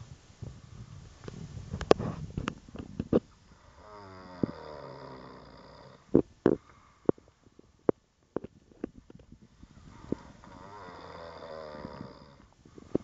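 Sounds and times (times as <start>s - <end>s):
man snoring: 3.6s - 6.2s, 9.9s - 12.5s.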